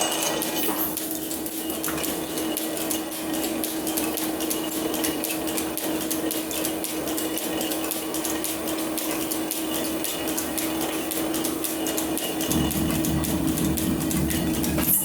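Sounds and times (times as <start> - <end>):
machine hum: 12.5 - 15.0.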